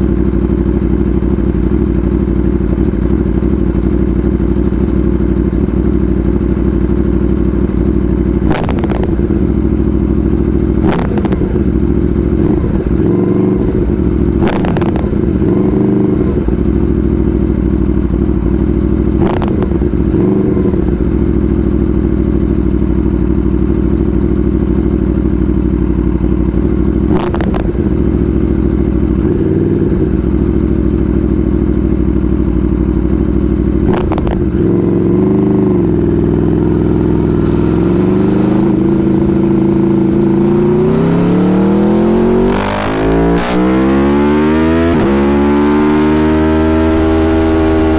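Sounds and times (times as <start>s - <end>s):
motorcycle engine running loud: 0.0s - 47.9s
sharp exhaust cracks: 8.4s - 22.2s, 26.1s - 30.8s, 32.6s - 41.1s.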